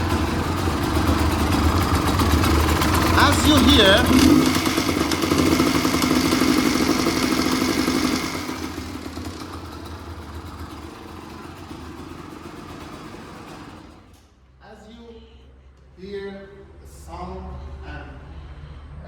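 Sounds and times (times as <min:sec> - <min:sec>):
motorcycle engine clattering: 0:00.0 - 0:14.1.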